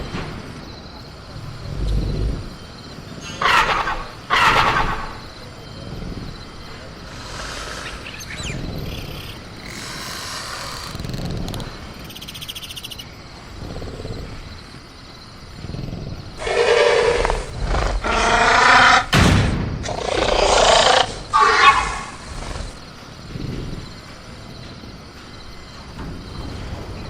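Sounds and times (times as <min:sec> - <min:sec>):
mixed creature sounds: 0:03.2 - 0:06.0, 0:15.6 - 0:19.2, 0:19.8 - 0:23.9
creature raspy call: 0:03.3 - 0:05.3, 0:16.4 - 0:19.2, 0:19.8 - 0:22.8.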